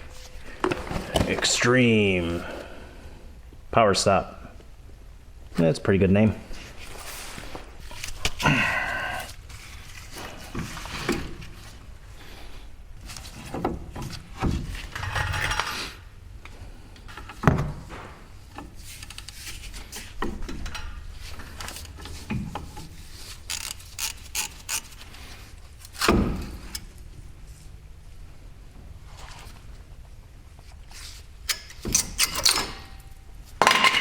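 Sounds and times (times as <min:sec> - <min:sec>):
hand tools clinking and scraping: 0:14.1 - 0:16.1, 0:30.6 - 0:34.0.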